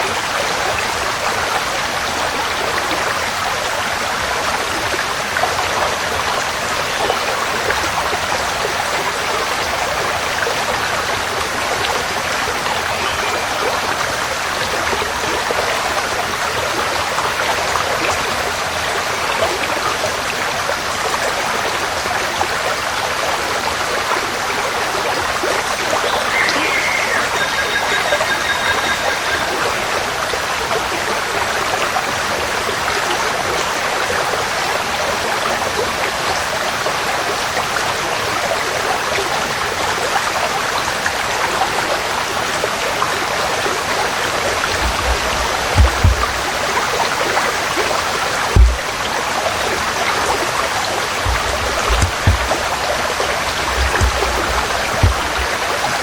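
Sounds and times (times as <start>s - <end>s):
stream flowing: 0.0s - 56.0s
bird calling: 26.1s - 29.7s.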